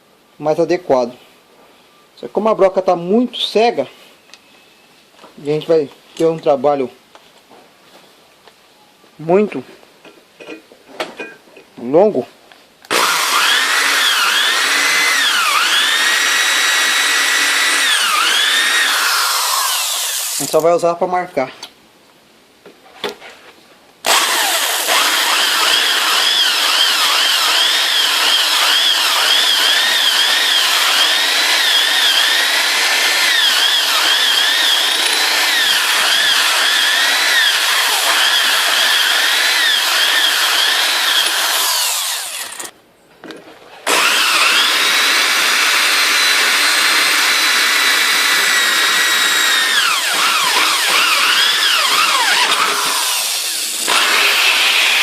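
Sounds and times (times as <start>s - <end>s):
electric drill boring metal: 12.9s - 20.6s, 24.1s - 42.7s, 43.9s - 55.0s.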